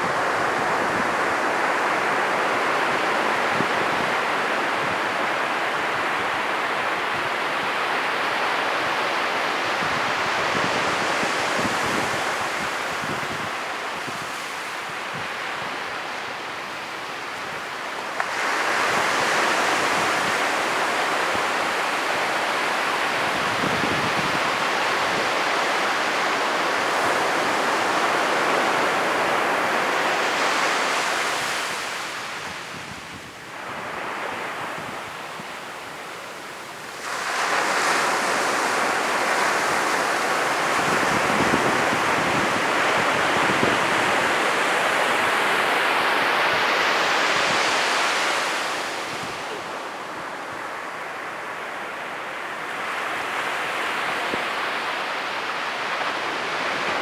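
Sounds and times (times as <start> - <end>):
ocean waves crashing: 33.5 - 57.0.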